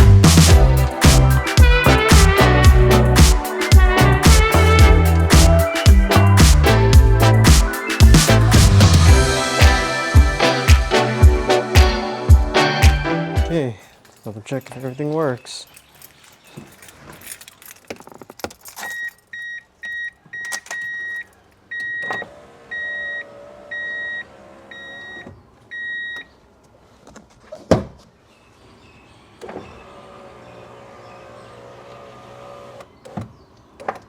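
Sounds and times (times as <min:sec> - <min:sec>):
power window motor whine: 0:21.8 - 0:25.4, 0:29.4 - 0:33.5.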